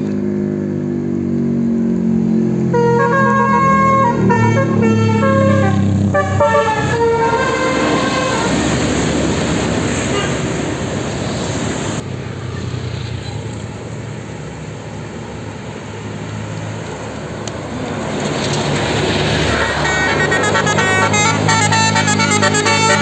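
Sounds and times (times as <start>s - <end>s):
heavy engine running: 0.0s - 23.0s
road traffic: 0.0s - 23.0s
bus musical horn melody: 2.6s - 12.0s, 18.4s - 23.0s.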